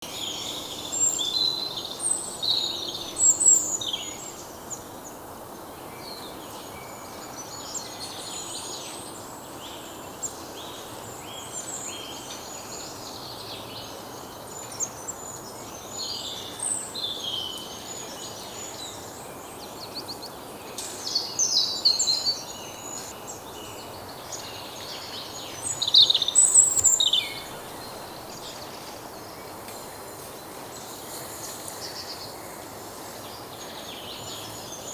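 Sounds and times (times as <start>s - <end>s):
steady background hiss: 0.1s - 34.9s
small birds chirping: 7.4s - 34.9s.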